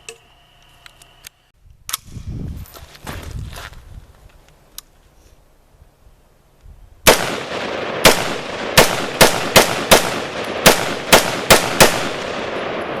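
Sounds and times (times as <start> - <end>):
gunshots with echo: 7.1 - 13.0.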